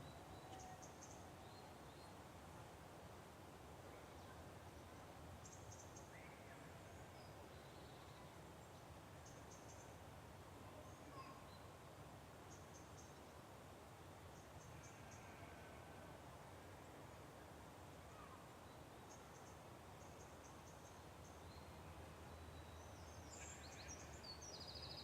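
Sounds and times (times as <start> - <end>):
faint birdsong trills: 0.0 - 2.2, 3.9 - 11.8, 14.3 - 16.0, 18.0 - 25.0.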